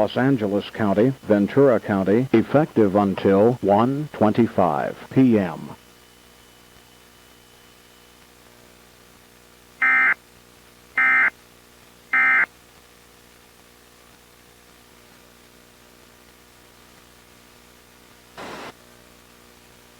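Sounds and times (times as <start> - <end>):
faint hiss and hum: 0.0 - 19.9
static burst: 18.4 - 18.8.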